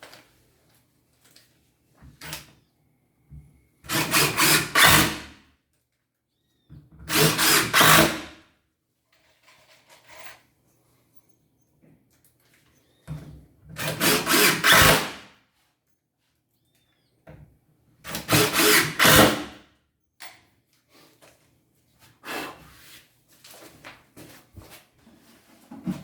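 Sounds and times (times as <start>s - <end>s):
power drill running: 7.1s - 8.3s, 13.8s - 15.2s, 18.1s - 19.5s.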